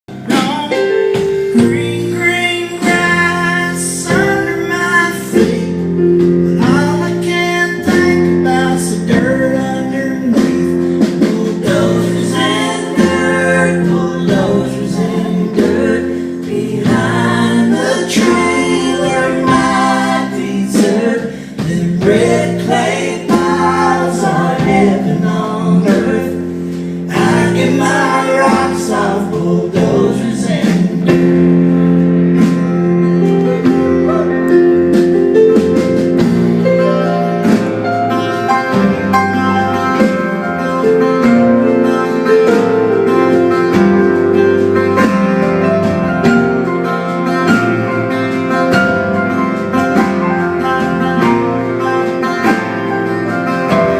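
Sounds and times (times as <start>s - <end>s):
guitar chords: 0.1s - 53.9s
people singing: 0.2s - 31.5s.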